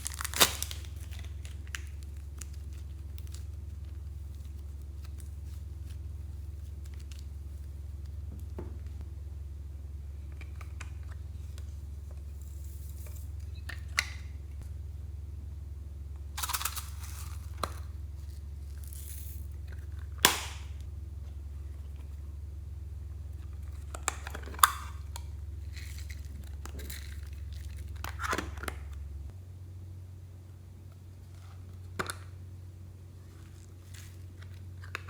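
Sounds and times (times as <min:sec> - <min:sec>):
slime crackling and popping: 0:00.0 - 0:07.7, 0:18.8 - 0:20.9
steady low hum: 0:00.0 - 0:35.0.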